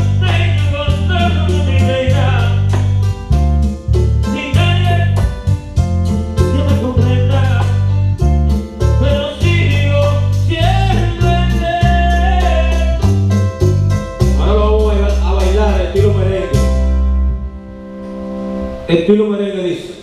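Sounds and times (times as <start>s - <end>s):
person singing: 0.0s - 2.8s, 4.3s - 5.3s, 6.4s - 7.9s, 9.0s - 13.1s, 14.4s - 16.6s
live band playing: 0.0s - 18.9s
deep bass notes: 0.0s - 20.0s.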